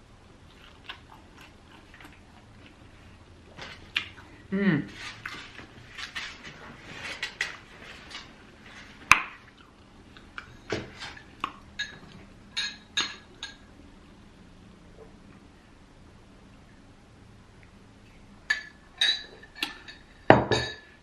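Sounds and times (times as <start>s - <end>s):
crunchy biting and chewing: 0.4s - 2.9s
dishes clinking: 11.8s - 13.7s, 18.5s - 21.0s.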